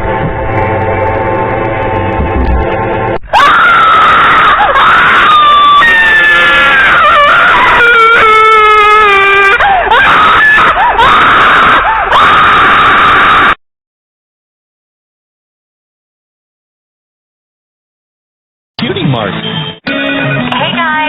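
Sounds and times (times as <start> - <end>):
distorted high-pitched scream: 1.9 - 13.6.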